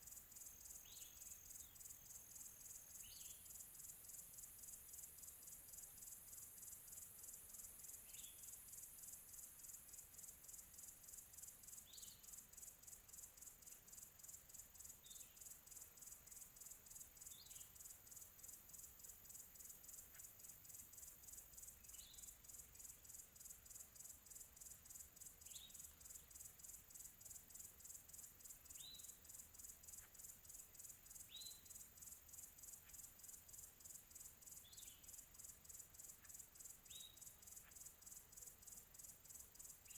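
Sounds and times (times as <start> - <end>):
high-pitched insect trilling: 0.1 - 39.9
bird chirps: 31.3 - 31.8, 34.6 - 35.1, 36.2 - 37.8.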